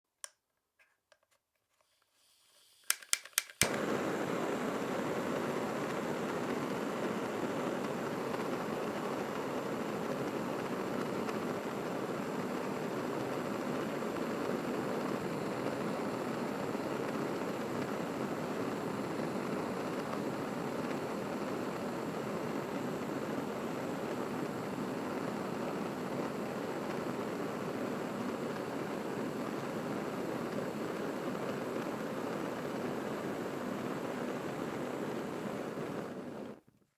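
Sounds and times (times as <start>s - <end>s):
blowlamp flame hissing: 1.9s - 36.6s
sharp igniter clicks: 2.7s - 9.1s.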